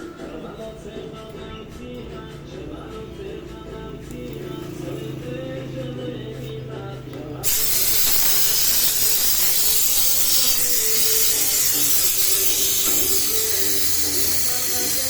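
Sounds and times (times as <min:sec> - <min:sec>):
faint music: 0:00.0 - 0:15.0
pressurised gas hissing: 0:07.4 - 0:15.0.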